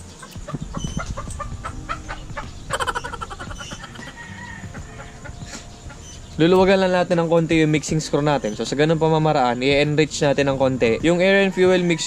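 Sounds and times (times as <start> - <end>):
chickens clucking: 0.0 - 9.9
loud chicken squawk: 0.2 - 6.1.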